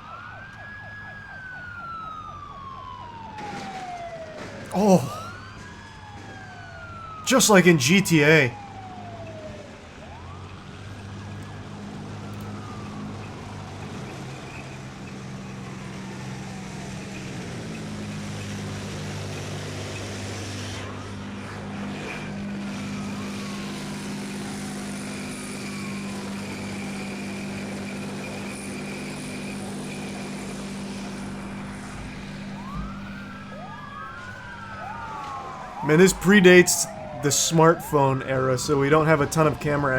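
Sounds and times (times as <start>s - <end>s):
police sirens wailing: 6.9s - 9.4s, 30.8s - 39.9s.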